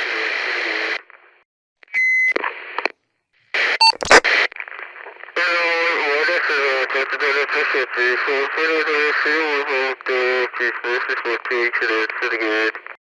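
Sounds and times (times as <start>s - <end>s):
walkie-talkie static: 0.0s - 1.1s, 3.6s - 13.0s
short electronic beep: 3.8s - 4.2s.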